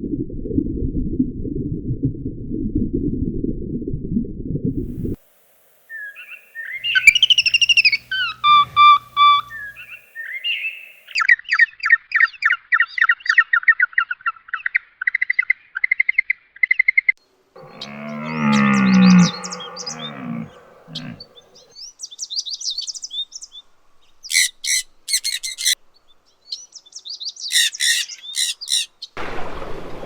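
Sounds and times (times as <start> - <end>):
bird chirping: 5.9 - 11.1, 17.6 - 29.1.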